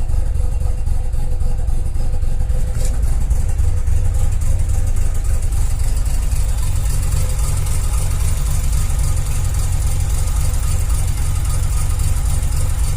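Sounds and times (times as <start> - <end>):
rotary engine idling roughly: 0.0 - 12.9.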